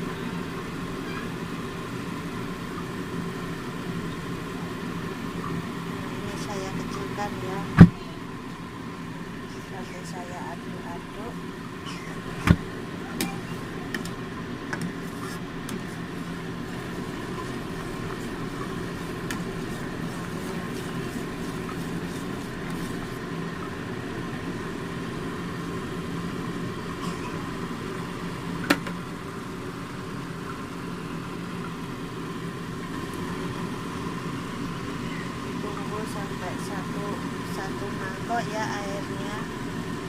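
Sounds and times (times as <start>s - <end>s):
pot of liquid simmering: 11.3s - 37.6s.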